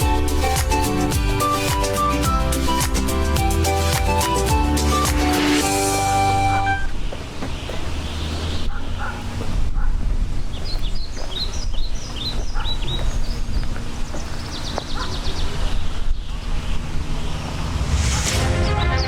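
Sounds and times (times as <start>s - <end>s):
birds chirping: 10.4s - 17.7s
low rumble: 17.1s - 19.0s.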